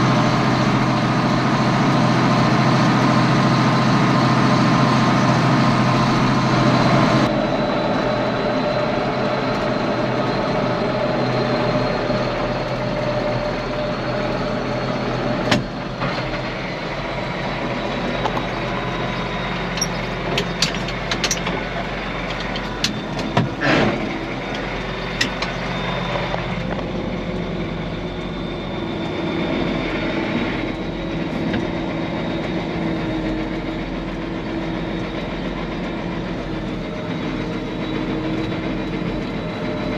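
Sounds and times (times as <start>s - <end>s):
tractor diesel engine running: 0.0s - 39.9s
clunks and rattles: 18.0s - 27.1s.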